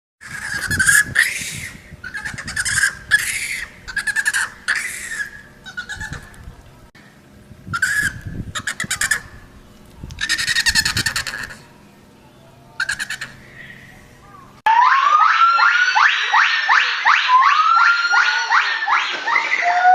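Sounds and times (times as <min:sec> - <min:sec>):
monkeys screeching: 0:00.2 - 0:06.3, 0:07.7 - 0:09.4, 0:10.2 - 0:11.6, 0:12.8 - 0:13.9, 0:14.7 - 0:19.9.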